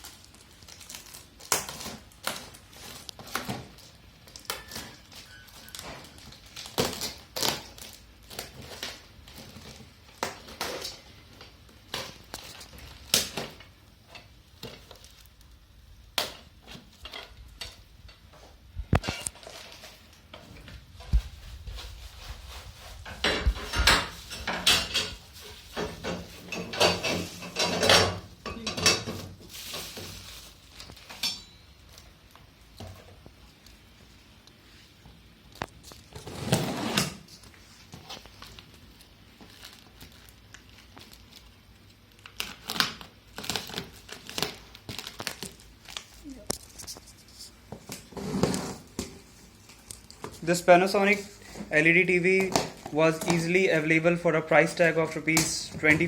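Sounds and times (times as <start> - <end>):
objects being handled and unpacked: 0.0 - 56.0.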